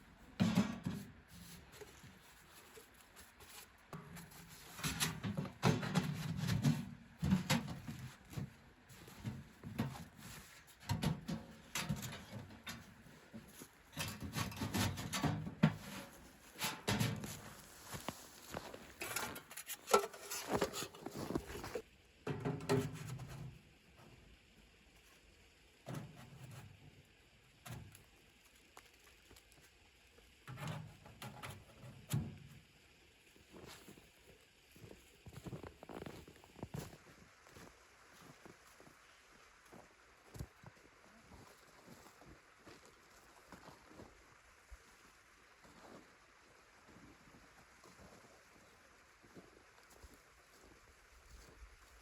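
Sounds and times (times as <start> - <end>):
objects being handled: 0.4 - 23.4.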